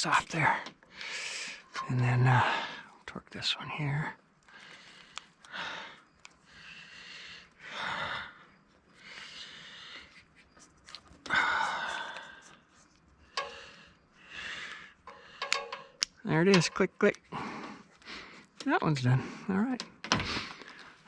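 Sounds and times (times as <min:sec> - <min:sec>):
man breathing hard: 0:00.9 - 0:01.8, 0:04.5 - 0:10.3, 0:11.2 - 0:16.0, 0:17.3 - 0:18.6, 0:20.1 - 0:21.0
faint small clicks: 0:04.4 - 0:06.4.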